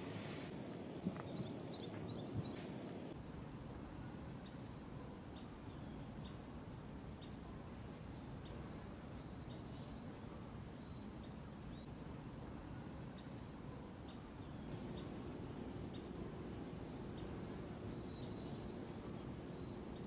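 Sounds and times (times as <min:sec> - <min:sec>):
high bird chirps: 0:14.7 - 0:20.0
low steady rumble: 0:14.7 - 0:20.0.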